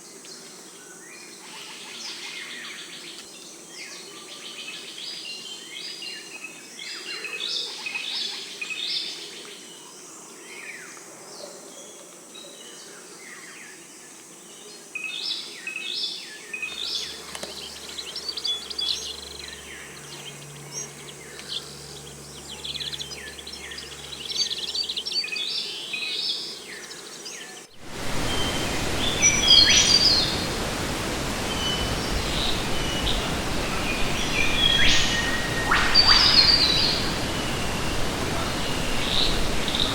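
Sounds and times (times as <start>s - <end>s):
small birds chirping: 13.3s - 39.9s
steady rushing hiss: 15.2s - 39.9s
single bird calls: 34.7s - 37.2s.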